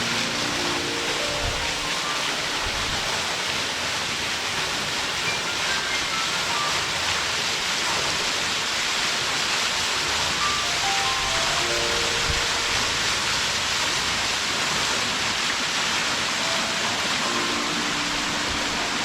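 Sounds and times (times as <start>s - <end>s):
faint melody of descending notes: 0.0s - 3.2s, 10.4s - 13.6s, 16.4s - 19.0s
waterfall roaring: 0.0s - 19.0s.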